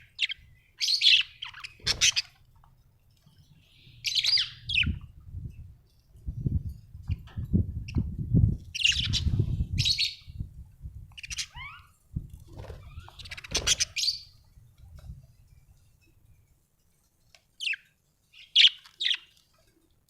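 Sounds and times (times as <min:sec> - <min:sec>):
budgerigars chirping: 0:00.1 - 0:02.4, 0:03.7 - 0:05.0, 0:08.8 - 0:10.3, 0:11.2 - 0:11.9, 0:12.8 - 0:14.4, 0:18.4 - 0:19.3.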